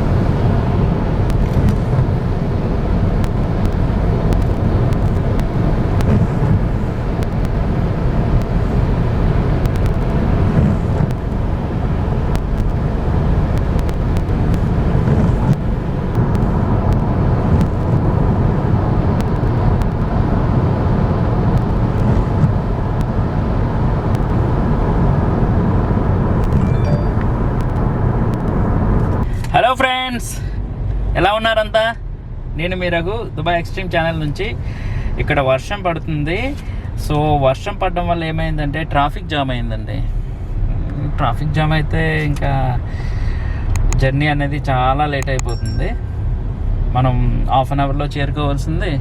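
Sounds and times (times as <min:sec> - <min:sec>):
road and engine rumble: 0:00.0 - 0:49.0
faint ticks: 0:01.3 - 0:02.0, 0:03.2 - 0:06.3, 0:07.2 - 0:07.7, 0:09.6 - 0:11.5, 0:12.3 - 0:12.9, 0:13.6 - 0:18.1, 0:19.2 - 0:20.2, 0:21.6 - 0:22.4, 0:24.1 - 0:24.5, 0:26.4 - 0:26.7, 0:27.6 - 0:28.6.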